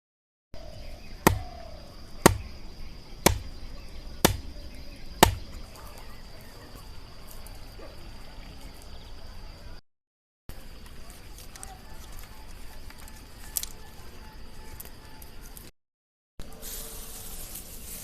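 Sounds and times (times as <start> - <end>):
crickets trilling: 0.6 - 9.8, 10.5 - 15.7
blade chopping into wood: 1.3 - 2.6, 3.2 - 3.6, 4.2 - 4.6, 5.2 - 5.6.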